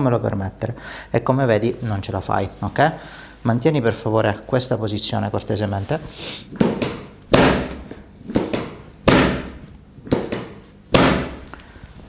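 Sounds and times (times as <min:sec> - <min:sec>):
sudden ringing thuds: 0:08.6 - 0:11.5.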